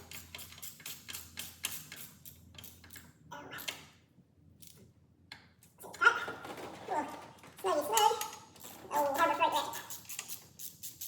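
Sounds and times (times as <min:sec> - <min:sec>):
hand ratchet clicking: 0:00.1 - 0:03.0, 0:09.5 - 0:11.0.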